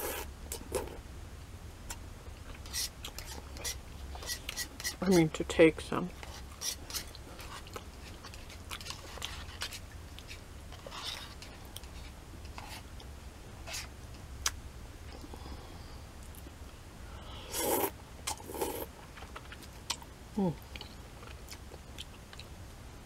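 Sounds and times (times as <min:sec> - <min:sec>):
steady low hum: 0:00.0 - 0:23.0
soft chewing and mouth clicks: 0:01.9 - 0:05.0, 0:06.2 - 0:13.1, 0:13.7 - 0:15.5, 0:16.2 - 0:16.8, 0:17.8 - 0:22.6
slurping noodles: 0:17.5 - 0:18.9.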